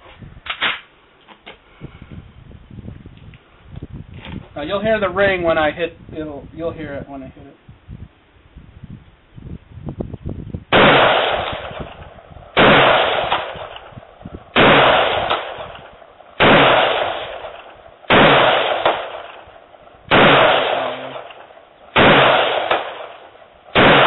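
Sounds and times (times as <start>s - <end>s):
rifle shots echoing: 10.7s - 24.0s.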